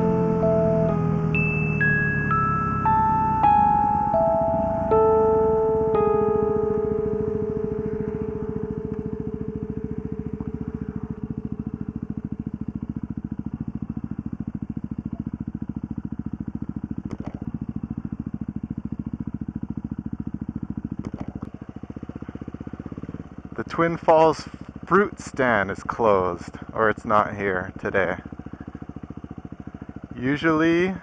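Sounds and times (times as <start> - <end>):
background piano music: 0.0 - 11.1
motorcycle engine running: 0.0 - 31.0.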